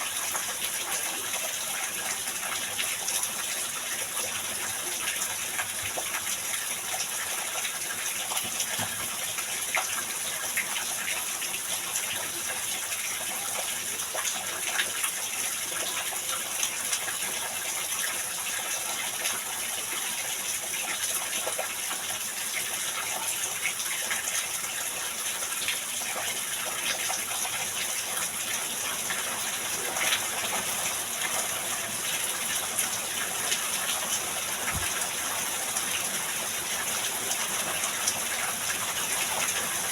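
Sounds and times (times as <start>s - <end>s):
heavy rain falling: 28.4s - 39.9s.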